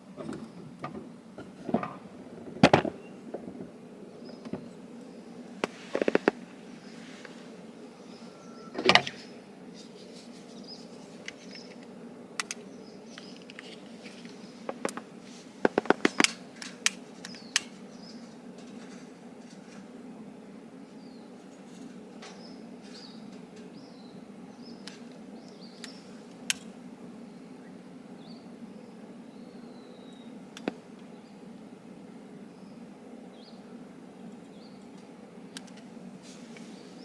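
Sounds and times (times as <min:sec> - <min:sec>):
campfire crackling: 0:01.3 - 0:07.8.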